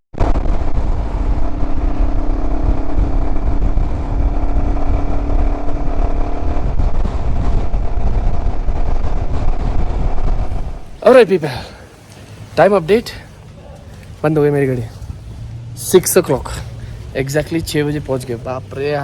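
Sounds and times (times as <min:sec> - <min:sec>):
wind rumble: 0:00.1 - 0:19.0
motorcycle engine running: 0:00.2 - 0:11.0.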